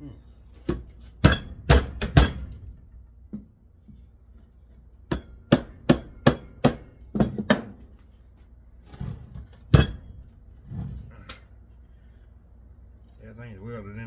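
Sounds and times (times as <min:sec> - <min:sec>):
hammer striking metal housing: 0:01.2 - 0:02.8, 0:05.1 - 0:06.9, 0:09.7 - 0:10.2.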